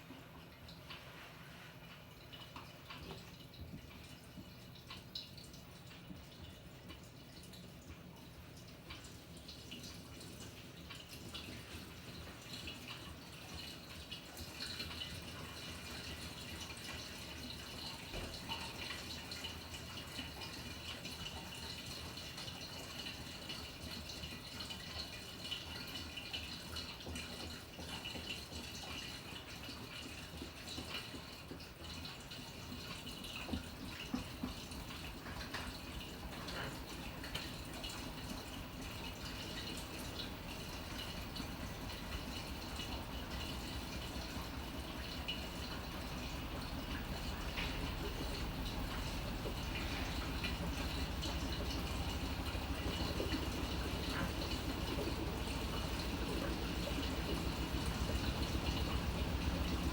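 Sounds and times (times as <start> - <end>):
water splashing in washing machine: 0.0 - 59.9.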